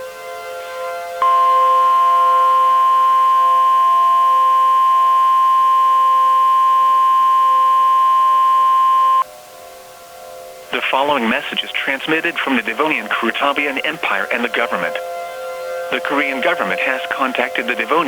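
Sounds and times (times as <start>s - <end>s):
high-pitched warning alarm tone: 1.2s - 9.2s.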